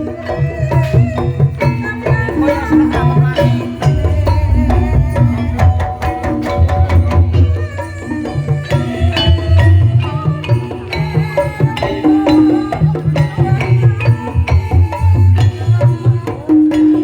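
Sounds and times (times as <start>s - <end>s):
hand drums beating: 0.0s - 17.0s
struck tuned metal tones: 2.8s - 9.8s.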